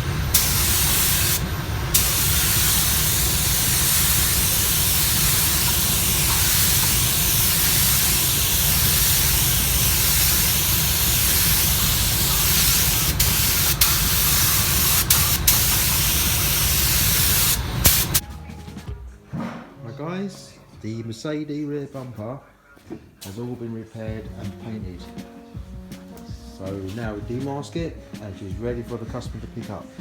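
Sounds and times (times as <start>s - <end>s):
paint spray gun hissing: 0.0s - 18.2s.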